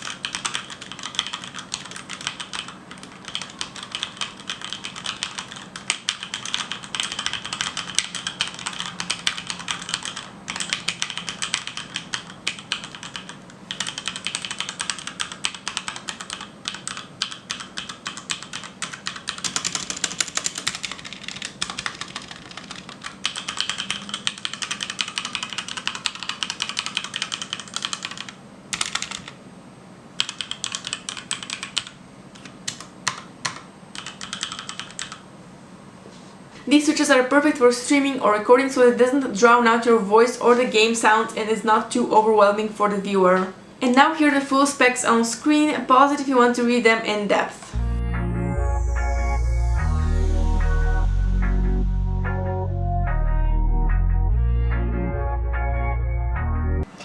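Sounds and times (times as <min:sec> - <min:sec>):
mechanical keyboard typing: 0:00.0 - 0:29.4, 0:30.2 - 0:35.2.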